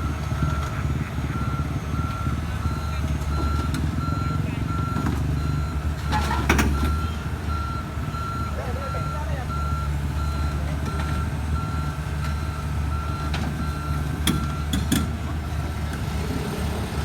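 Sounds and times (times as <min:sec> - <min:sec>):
diesel machinery running: 0:00.0 - 0:17.0
back-up alarm beeping: 0:01.3 - 0:14.8.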